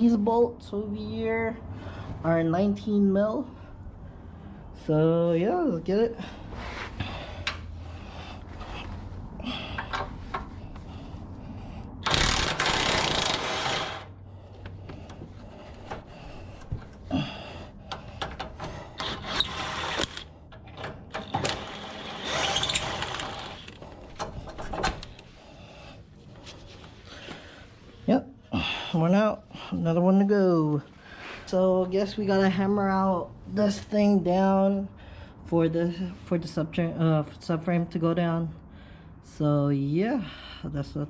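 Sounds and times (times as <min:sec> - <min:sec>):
mechanical rattling: 0:12.0 - 0:14.1, 0:17.9 - 0:25.3
wrench clicks and knocks: 0:17.9 - 0:25.2.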